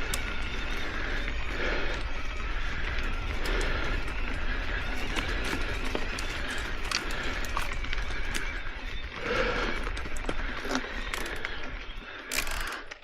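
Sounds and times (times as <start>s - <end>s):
bike clicks and rattles: 0.0s - 13.0s
tyres rolling on dirt trail: 0.0s - 13.0s.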